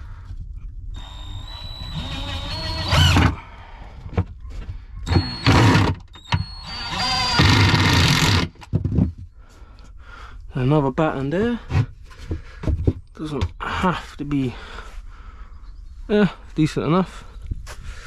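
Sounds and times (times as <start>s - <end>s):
power drill driving screws: 1.0s - 3.4s, 5.0s - 8.7s.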